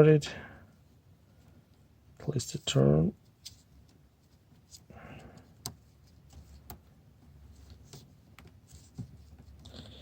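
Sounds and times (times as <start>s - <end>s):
small clicks and taps of wires: 3.3s - 9.8s.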